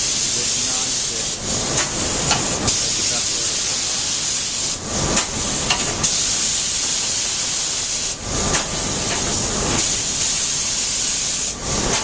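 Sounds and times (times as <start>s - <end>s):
spray gun hissing: 0.0s - 12.0s.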